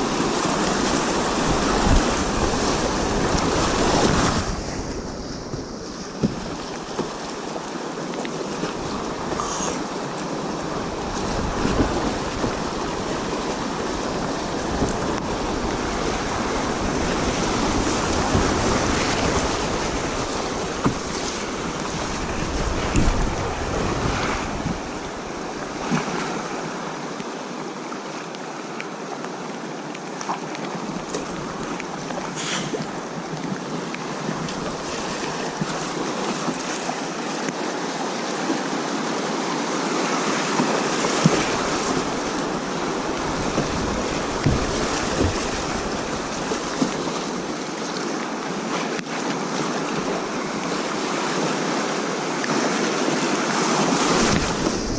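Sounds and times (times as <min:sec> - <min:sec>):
wind buffeting microphone: 0:00.0 - 0:06.8, 0:10.6 - 0:25.9, 0:53.8 - 0:54.9
river water rushing: 0:00.0 - 0:54.9
short knocks and splashes: 0:17.8 - 0:21.6, 0:43.2 - 0:47.1.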